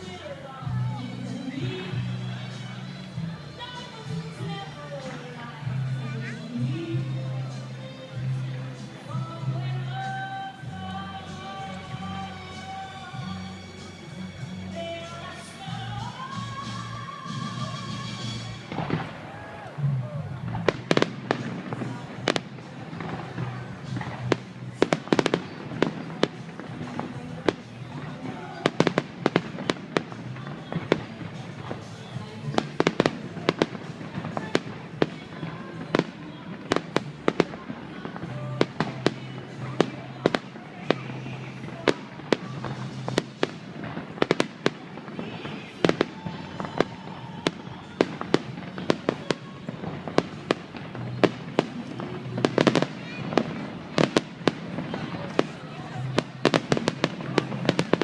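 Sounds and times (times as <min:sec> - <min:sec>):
fireworks bursting: 0:15.0 - 0:58.0.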